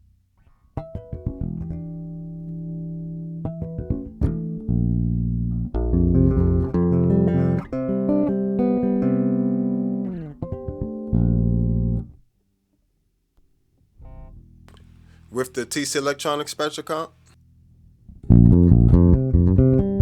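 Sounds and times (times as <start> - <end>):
electric bass guitar notes: 0.8 - 12.2, 14.0 - 15.4, 17.8 - 20.0.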